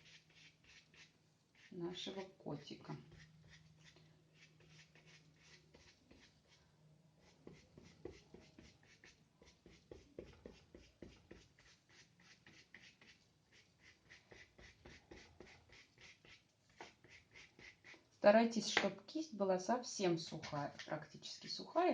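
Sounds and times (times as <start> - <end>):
brush strokes on paper: 0.0 - 18.1.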